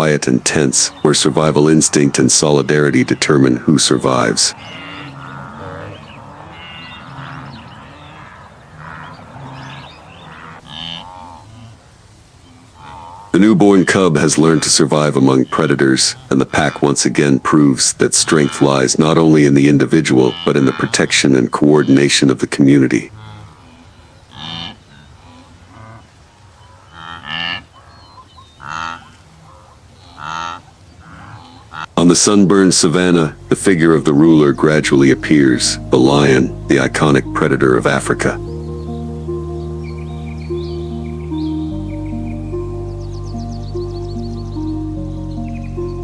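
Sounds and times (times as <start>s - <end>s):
animal lowing cries: 0.0s - 11.8s
animal calls with lowing quality: 0.0s - 46.0s.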